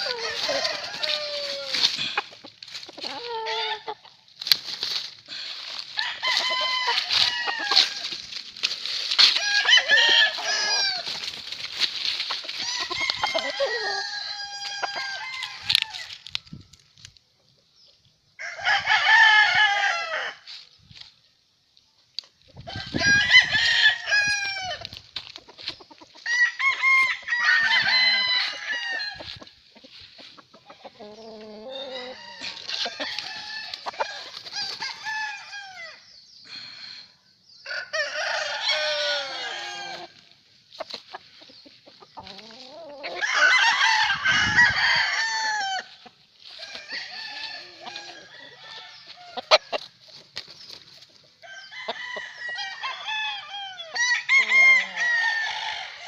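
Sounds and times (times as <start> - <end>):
chickens clucking: 0.0 - 16.4, 24.3 - 35.0, 35.7 - 43.7, 44.4 - 52.5
roosters crowing: 0.0 - 16.4, 18.4 - 20.6, 22.6 - 41.4, 42.1 - 50.0, 51.3 - 56.0.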